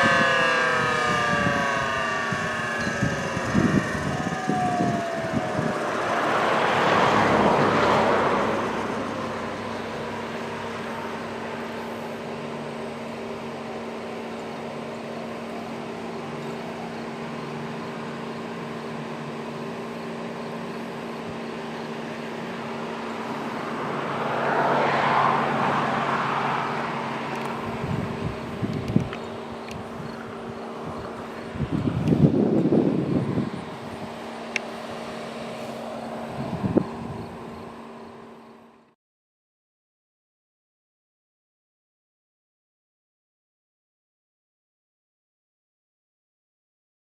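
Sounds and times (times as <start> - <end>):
dual-tone siren winding down: 0.0 - 19.9, 20.8 - 37.0
steady low hum: 0.0 - 24.5
vehicles passing: 0.0 - 38.9.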